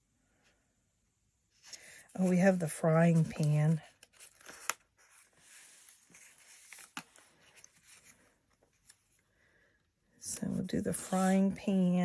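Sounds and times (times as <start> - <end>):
paper sheets rustling: 1.7 - 9.1.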